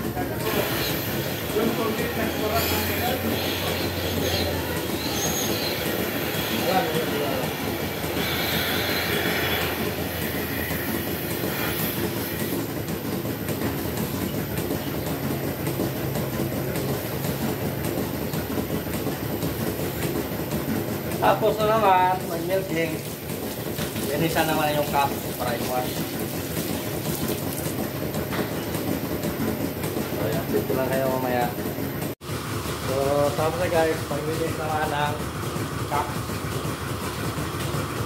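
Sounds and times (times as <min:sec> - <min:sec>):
milking machine rumble and hum: 0:00.0 - 0:38.0.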